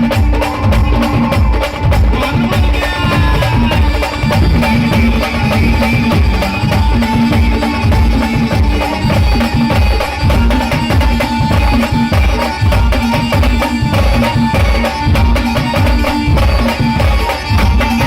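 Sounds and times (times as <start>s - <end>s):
folk band melody: 0.0s - 18.0s
heavy driving drum beats: 0.0s - 18.0s.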